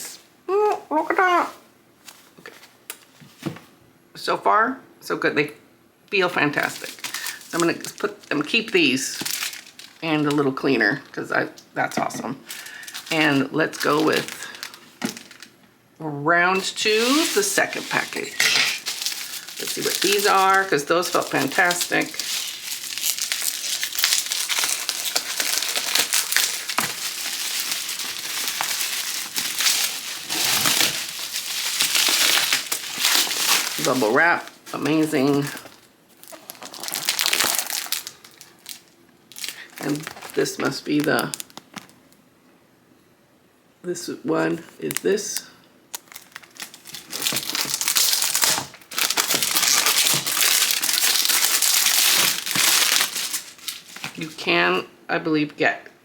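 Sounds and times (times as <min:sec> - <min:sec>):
bubble wrap crinkling and crackling: 0:06.5 - 0:11.2, 0:12.4 - 0:15.6, 0:16.6 - 0:42.1, 0:44.7 - 0:54.4.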